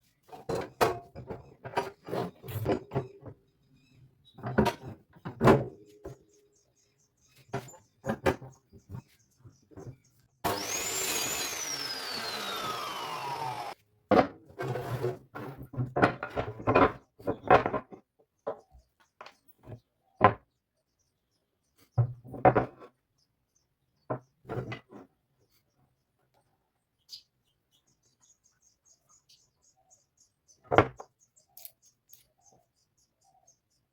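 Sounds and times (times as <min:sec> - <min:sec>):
wooden pieces knocking and scraping: 0:10.5 - 0:18.6, 0:22.0 - 0:23.0.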